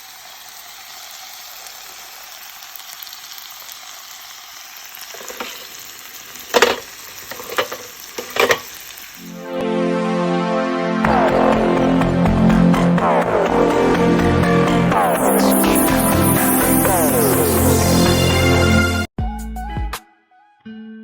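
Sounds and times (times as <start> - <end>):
food sizzling on a grill: 0.0 - 9.4.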